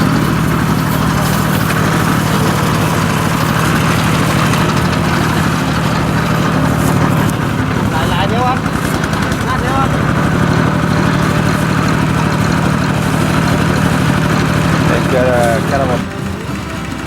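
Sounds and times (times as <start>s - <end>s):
tractor engine running: 0.0s - 17.0s.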